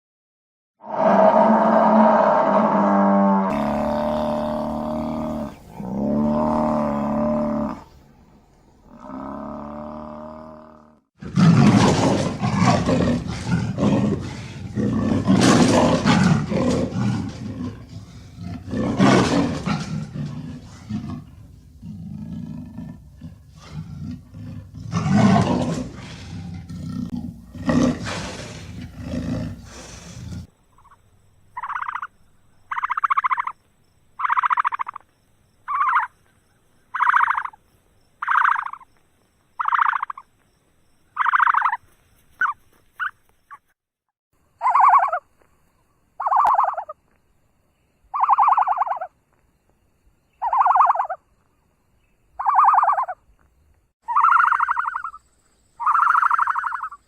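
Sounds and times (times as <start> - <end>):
large animal roaring and growling: 0.8 - 7.9, 8.9 - 30.5.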